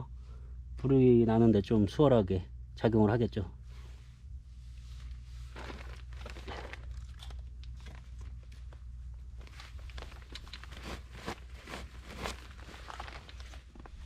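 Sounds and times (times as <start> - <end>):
tissue paper crinkling: 5.0 - 8.2, 9.4 - 14.0
wet sticks crunching: 5.6 - 8.8, 9.4 - 13.8.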